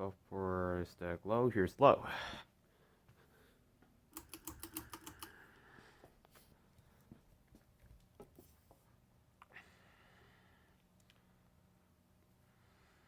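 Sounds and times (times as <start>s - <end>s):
ceiling fan humming: 0.0s - 13.0s
sharp clicks: 4.1s - 5.4s.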